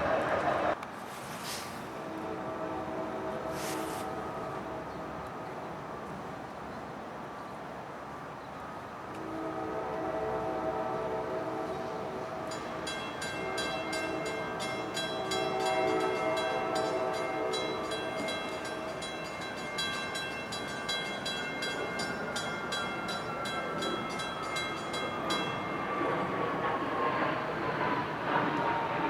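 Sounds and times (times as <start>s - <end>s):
train horn chord: 1.9s - 5.5s, 9.1s - 19.5s
crossing warning bell ringing: 12.2s - 26.4s.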